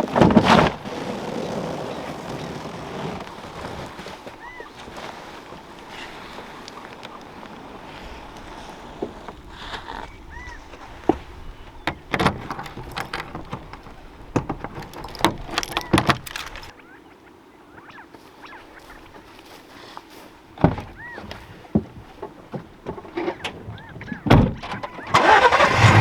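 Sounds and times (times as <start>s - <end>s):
low wind rumble: 0.6s - 16.8s
gear being handled knocks: 11.0s - 16.7s.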